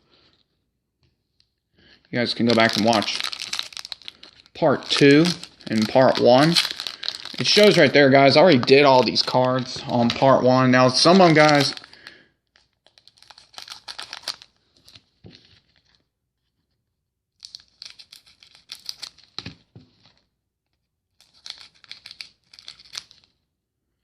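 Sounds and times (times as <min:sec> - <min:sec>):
foil wrapper tearing and crinkling: 0:02.2 - 0:09.3, 0:11.0 - 0:12.1, 0:12.9 - 0:14.5, 0:21.2 - 0:23.2.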